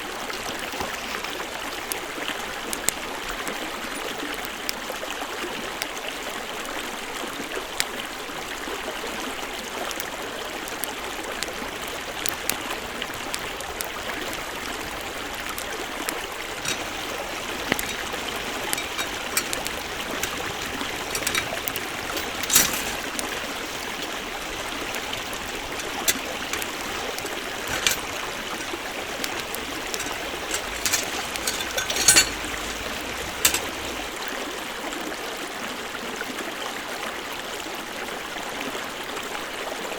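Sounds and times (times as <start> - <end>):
campfire pops and crackles: 9.9 - 31.5
stream rushing: 16.6 - 34.4.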